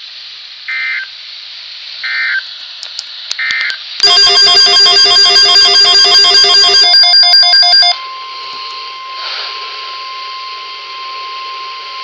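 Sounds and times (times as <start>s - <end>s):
radio hiss: 0.0s - 6.9s
rapidly pulsing electronic beep: 4.0s - 8.0s
steady warning alarm tone: 4.0s - 12.0s.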